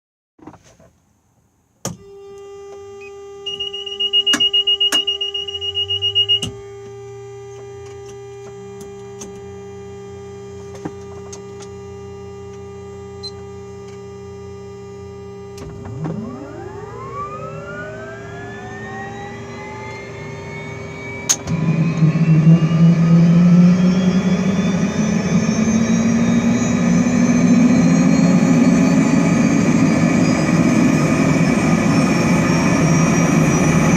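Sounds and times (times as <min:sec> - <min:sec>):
electrical hum: 0:02.0 - 0:33.9
beeping warning tone: 0:03.0 - 0:07.0, 0:11.8 - 0:33.9
helicopter turbine whine and roar: 0:15.6 - 0:33.9.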